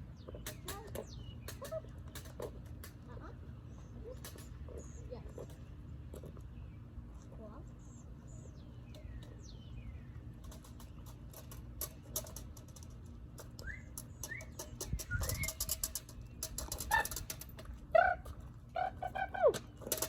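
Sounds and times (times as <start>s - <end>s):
birds chirping: 0.0s - 20.0s
sharp clicks and clatter: 10.4s - 17.8s.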